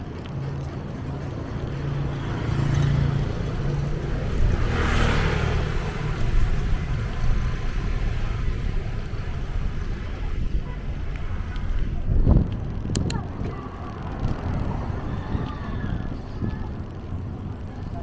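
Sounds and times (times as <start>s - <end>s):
low rumble of traffic: 0.0s - 18.0s
car passing by: 2.0s - 10.5s.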